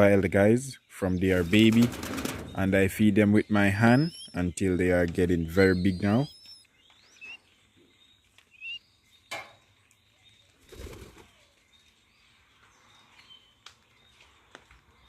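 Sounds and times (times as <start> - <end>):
faint bird chirps: 0.0 - 15.0
birds' wings flapping: 1.5 - 2.6, 10.6 - 11.3.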